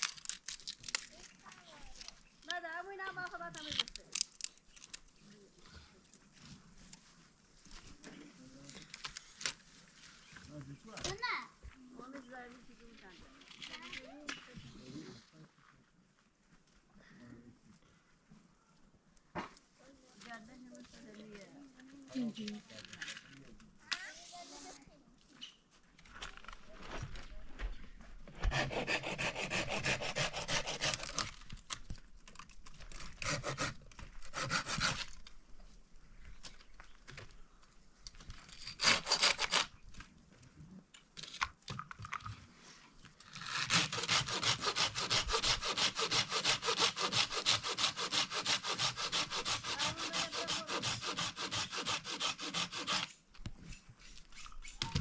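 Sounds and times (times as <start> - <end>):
rough rasping scraping: 28.3 - 31.5, 32.7 - 35.3, 38.3 - 39.8, 43.2 - 54.8.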